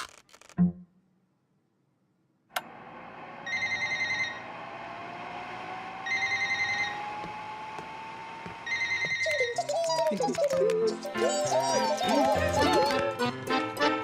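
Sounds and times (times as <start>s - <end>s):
click: 2.5s - 2.7s.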